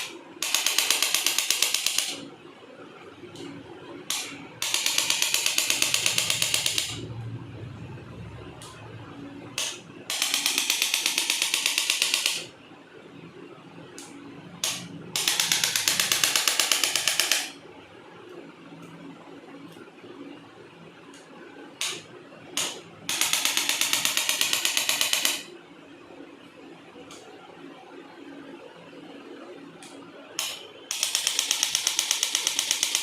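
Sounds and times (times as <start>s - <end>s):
handheld device tapping rapidly: 0.0s - 2.2s, 4.1s - 7.0s, 9.6s - 12.5s, 14.6s - 17.5s, 22.6s - 25.5s, 30.4s - 33.0s.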